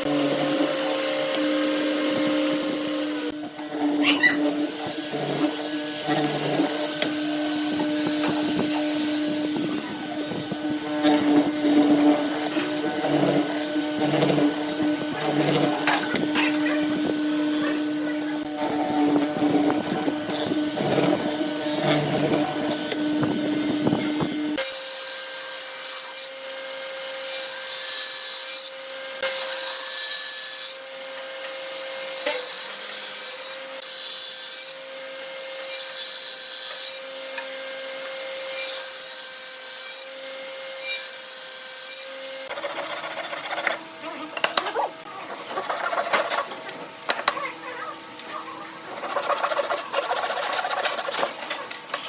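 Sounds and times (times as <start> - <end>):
hand sawing wood: 0.0 - 24.3, 42.0 - 47.5, 48.3 - 52.0
loud machine running: 0.0 - 24.6.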